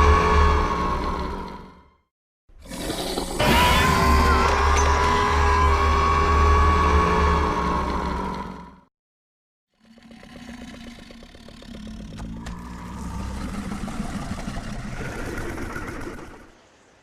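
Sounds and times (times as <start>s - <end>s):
fluttering pulse growl: 9.8s - 16.5s.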